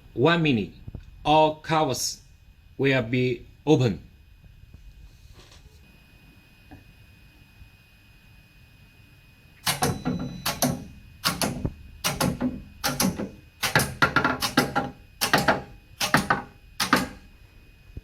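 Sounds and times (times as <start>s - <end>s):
machine covers clacking open: 9.7s - 17.2s.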